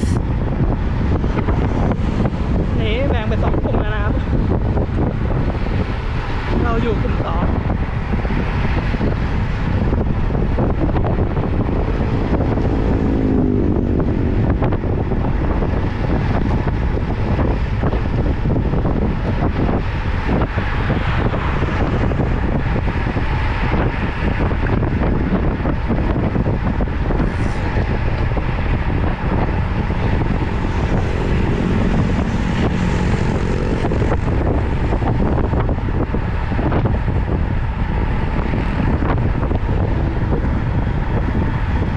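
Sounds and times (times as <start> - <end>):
wind rushing over microphone: 0.0 - 41.9.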